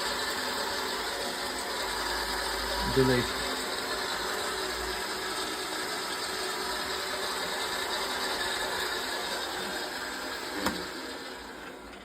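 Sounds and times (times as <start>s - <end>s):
lathe whirring: 0.0s - 12.0s.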